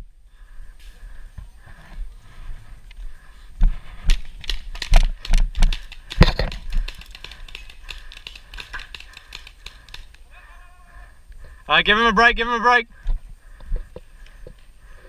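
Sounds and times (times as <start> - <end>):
paintball markers firing: 4.1 - 10.2.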